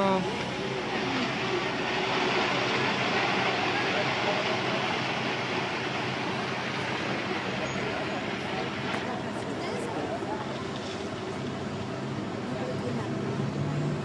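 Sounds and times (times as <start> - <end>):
landslide of rock and debris: 0.7 - 11.6.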